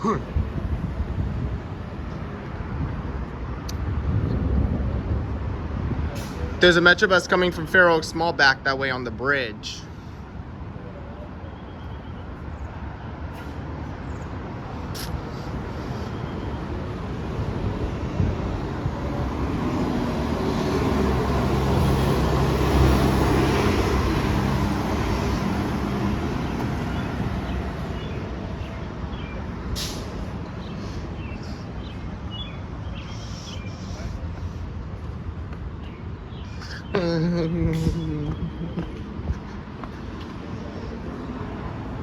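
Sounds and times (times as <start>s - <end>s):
traffic noise: 0.0s - 42.0s
bus engine droning past: 11.9s - 42.0s.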